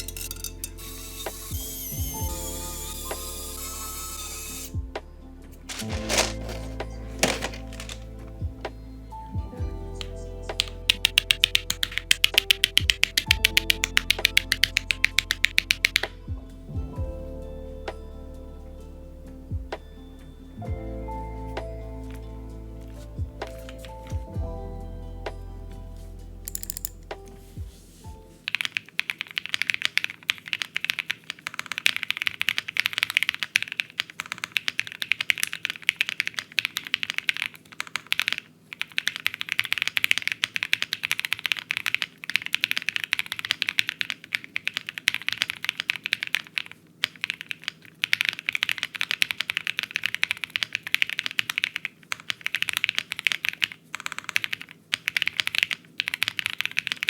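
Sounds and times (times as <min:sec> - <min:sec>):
background music: 0:00.0 - 0:28.5
fast typing on mechanical keyboard: 0:05.7 - 0:08.1, 0:10.6 - 0:16.1, 0:28.5 - 0:57.0.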